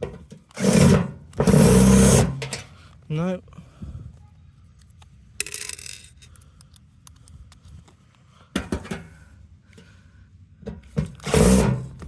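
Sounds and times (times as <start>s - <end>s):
screwdriver scraping screw: 0.5s - 2.6s, 11.1s - 12.0s.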